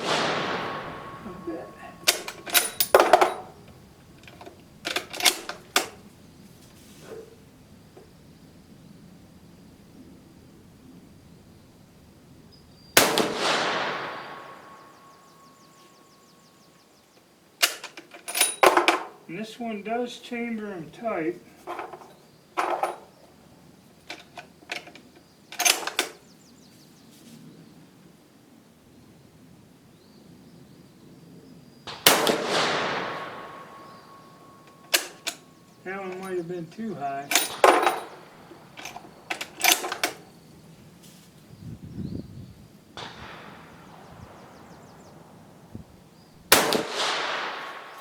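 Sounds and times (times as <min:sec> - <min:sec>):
rifle shot echoing: 0:00.0 - 0:06.1, 0:13.0 - 0:16.2, 0:31.9 - 0:40.2, 0:43.0 - 0:45.7, 0:46.4 - 0:48.0.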